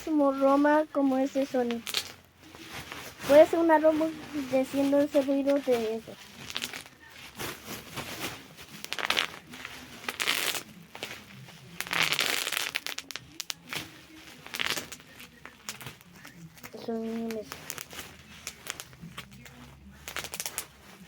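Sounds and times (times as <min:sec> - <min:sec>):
crackling crinkling noises: 0:00.0 - 0:21.0.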